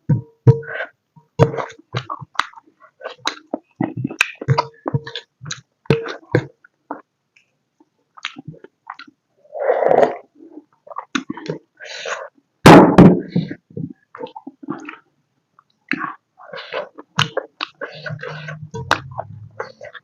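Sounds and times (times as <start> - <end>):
chewing and mouth sounds: 1.4 - 7.1, 8.1 - 9.2, 14.1 - 20.0.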